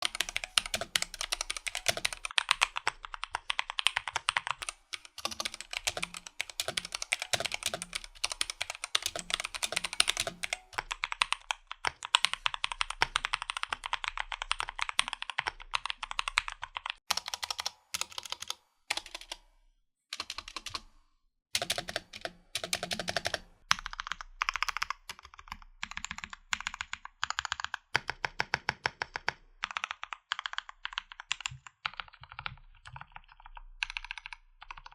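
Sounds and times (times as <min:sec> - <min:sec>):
mechanical keyboard typing: 0:00.0 - 0:19.4, 0:20.1 - 0:20.8, 0:21.6 - 0:34.9.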